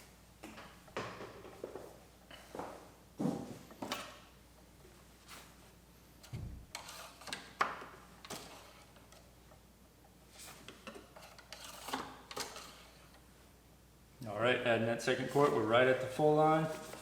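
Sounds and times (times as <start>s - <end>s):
dull thump: 6.3s - 6.7s.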